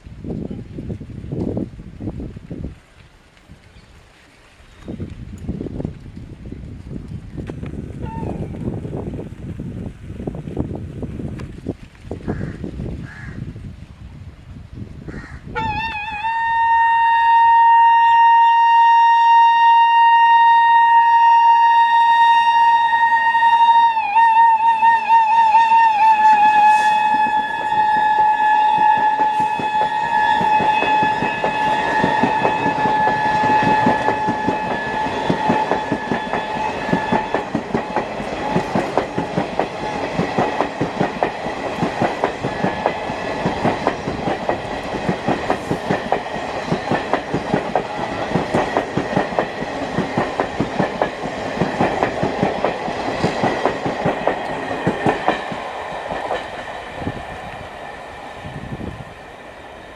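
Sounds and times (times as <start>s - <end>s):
train horn blast: 15.6s - 38.8s
train wheels clattering over rail joints: 27.1s - 57.2s.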